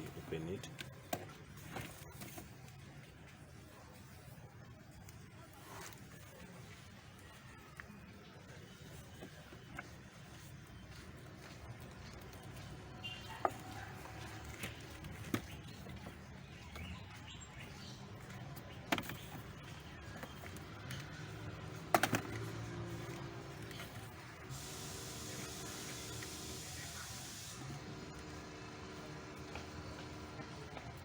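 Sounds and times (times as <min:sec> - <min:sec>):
steady hiss: 0:24.5 - 0:27.8.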